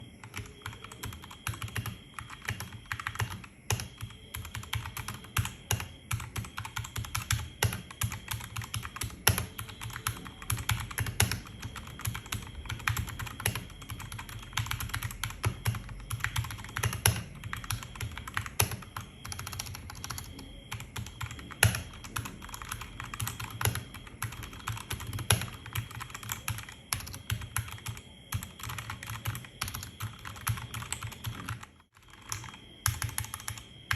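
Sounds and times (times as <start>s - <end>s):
mechanical keyboard typing: 0.0s - 33.9s.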